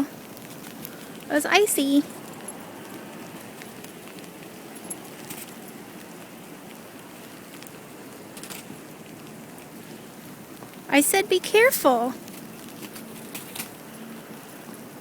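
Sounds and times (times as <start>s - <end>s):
freezing rain pattering on ice: 0.0s - 15.0s.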